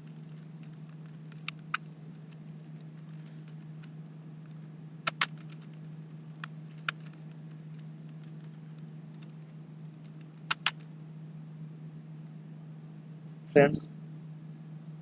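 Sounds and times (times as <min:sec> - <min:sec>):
low hum: 0:00.0 - 0:15.0
keyboard keystrokes: 0:05.1 - 0:05.8, 0:06.8 - 0:07.3, 0:10.5 - 0:10.8.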